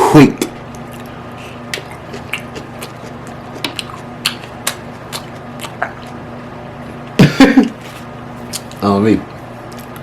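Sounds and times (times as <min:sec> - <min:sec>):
steady low hum: 0:00.0 - 0:10.0
wet chewing and lip smacking: 0:00.7 - 0:06.2, 0:08.4 - 0:08.8.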